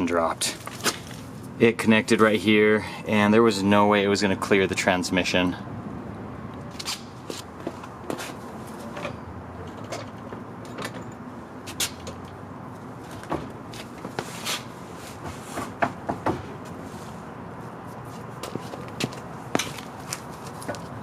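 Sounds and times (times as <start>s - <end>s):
clicks and knocks of metal parts: 8.8s - 12.4s.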